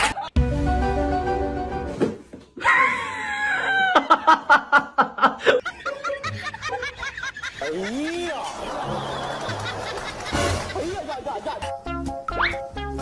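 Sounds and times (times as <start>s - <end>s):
music: 0.3s - 2.2s, 8.5s - 13.0s
person laughing hard: 2.6s - 11.6s.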